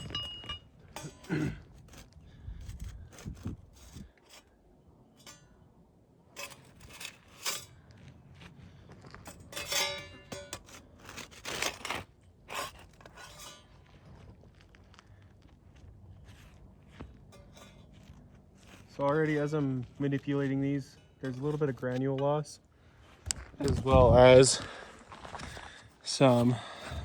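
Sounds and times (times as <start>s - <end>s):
light metallic clinks: 0.0s - 1.2s
scraper scraping shingles: 0.8s - 4.6s, 6.4s - 7.8s, 9.2s - 14.0s, 16.2s - 27.0s.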